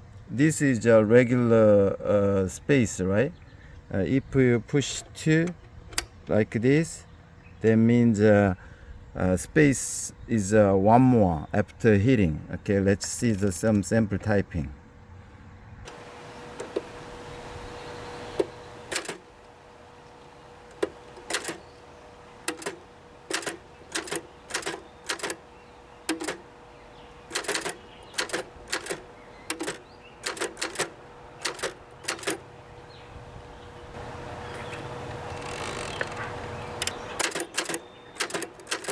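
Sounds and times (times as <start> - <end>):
manual typewriter key strikes: 18.9 - 19.2, 20.7 - 21.6, 22.4 - 25.4, 26.0 - 26.5, 27.3 - 32.4, 35.4 - 38.9.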